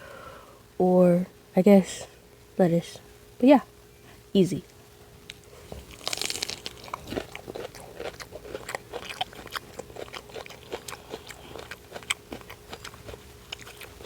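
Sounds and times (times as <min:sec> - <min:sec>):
chewing with wet crunches: 0:05.3 - 0:14.0
biting into sandwich: 0:05.6 - 0:14.0.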